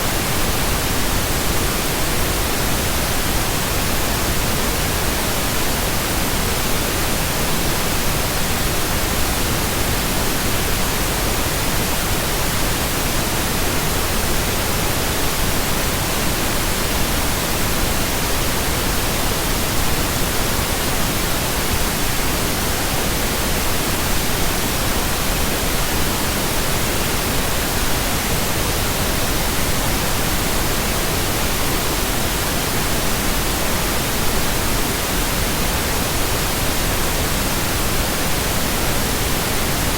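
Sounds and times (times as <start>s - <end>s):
pink noise hiss: 0.0s - 39.9s.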